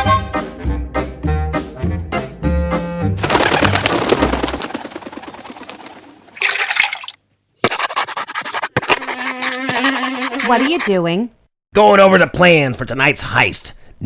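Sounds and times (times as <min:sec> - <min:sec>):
brass swing music: 0:00.0 - 0:04.3.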